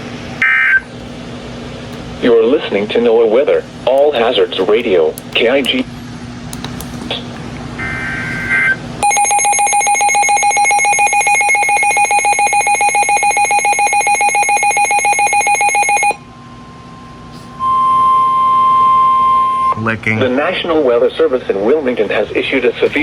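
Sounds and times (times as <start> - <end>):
steady warning alarm tone: 8.5 - 19.8
fast-pulsing electronic alarm beep: 8.6 - 16.2.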